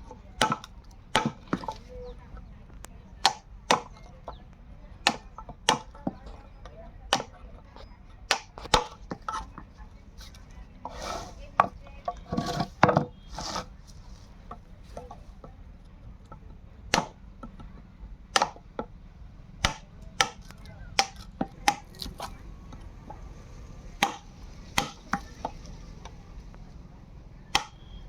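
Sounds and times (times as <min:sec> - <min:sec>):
scraping on wood: 0:08.7 - 0:15.5.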